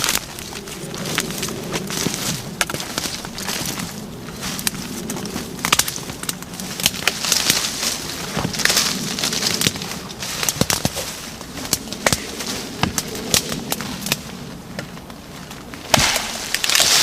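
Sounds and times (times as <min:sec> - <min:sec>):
twigs and foliage rustling: 0:00.0 - 0:17.0
axe chopping branches: 0:15.8 - 0:17.0.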